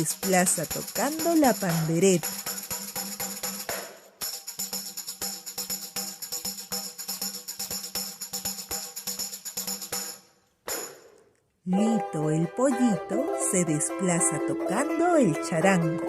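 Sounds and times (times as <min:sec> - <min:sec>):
tambourine jingling: 0:00.0 - 0:11.2
light musical backing: 0:11.6 - 0:16.0.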